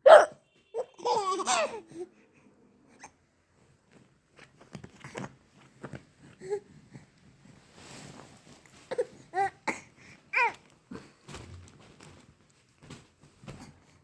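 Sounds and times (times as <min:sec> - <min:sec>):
baby laughing: 0:00.1 - 0:02.0.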